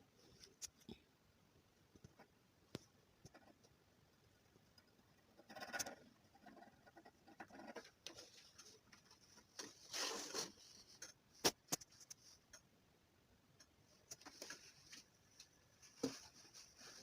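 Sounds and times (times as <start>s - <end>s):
pen scratching and rustling: 5.2s - 12.4s.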